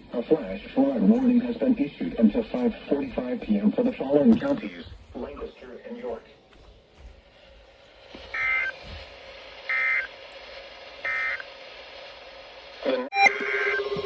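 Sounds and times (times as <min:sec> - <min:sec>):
two-tone modem squawks: 0:08.3 - 0:08.8, 0:09.7 - 0:10.2, 0:11.0 - 0:11.5, 0:12.8 - 0:14.0.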